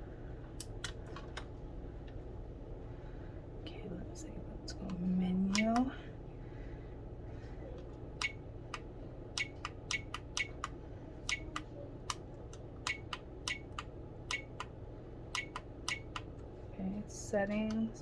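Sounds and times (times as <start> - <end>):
steady low hum: 0.0 - 18.0
camcorder buttons clicking: 8.2 - 14.8.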